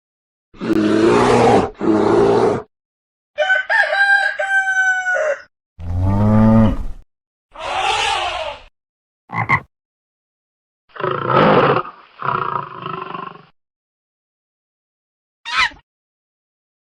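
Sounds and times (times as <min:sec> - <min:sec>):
rooster crowing: 0:03.4 - 0:05.5
low falling animal call: 0:07.6 - 0:08.7
rough animal calls: 0:07.6 - 0:08.7.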